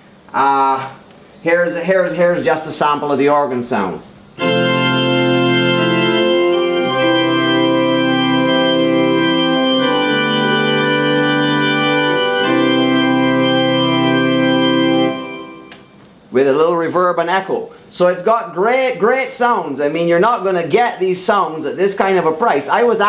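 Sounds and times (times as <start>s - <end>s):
electronic organ chords: 4.3s - 16.0s.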